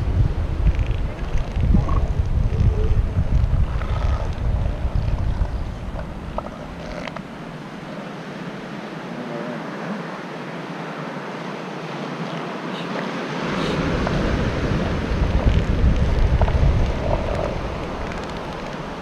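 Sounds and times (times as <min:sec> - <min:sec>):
wind buffeting microphone: 0:00.0 - 0:07.8, 0:13.2 - 0:19.0
ocean surf washing on beach: 0:00.0 - 0:19.0.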